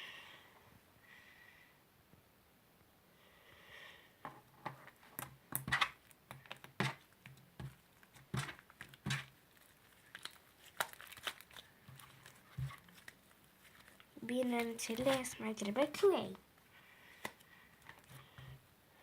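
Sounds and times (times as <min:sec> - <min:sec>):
slime squelching by hand: 0:05.1 - 0:16.2.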